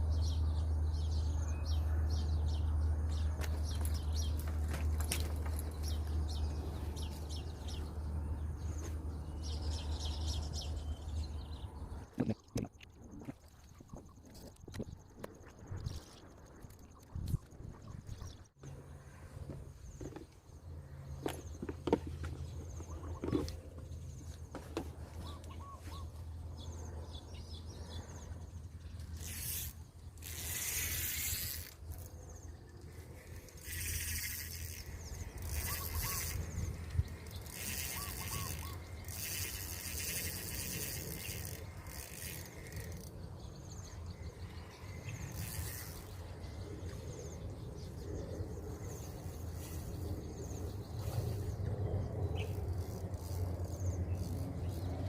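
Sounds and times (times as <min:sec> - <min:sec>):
steady low hum: 0:17.2 - 0:55.0
bird chirps: 0:25.1 - 0:29.7, 0:33.6 - 0:40.0.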